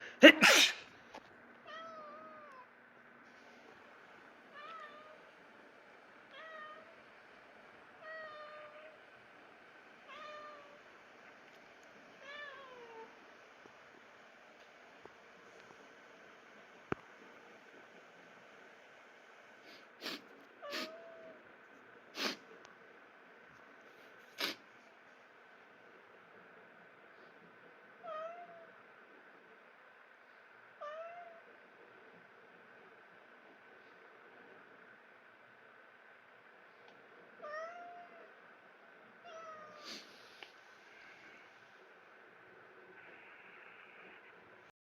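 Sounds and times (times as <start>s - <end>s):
man sneezing: 0.0s - 0.9s
cat meowing: 1.7s - 2.7s, 4.5s - 5.2s, 37.4s - 38.3s.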